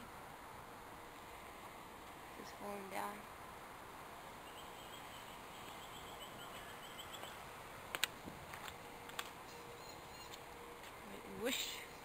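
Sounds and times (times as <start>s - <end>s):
faint outdoor ambience: 0.0s - 12.0s
high animal chirps: 4.4s - 7.4s.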